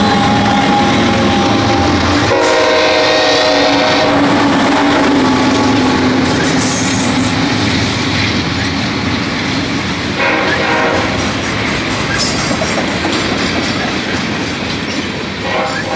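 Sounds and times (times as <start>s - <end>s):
locomotive air horn blast: 0.0s - 7.6s, 10.2s - 11.3s, 15.4s - 15.9s
freight train rumbling past: 0.0s - 15.9s.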